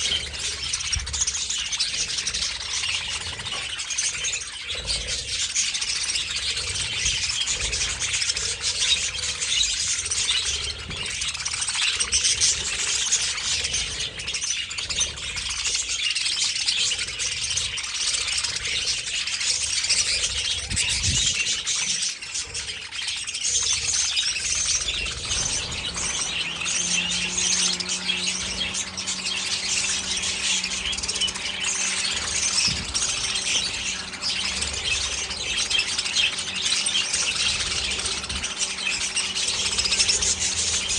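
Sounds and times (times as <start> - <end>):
budgerigars chattering and chirping: 0.0 - 40.9
steady low hum: 23.5 - 40.9.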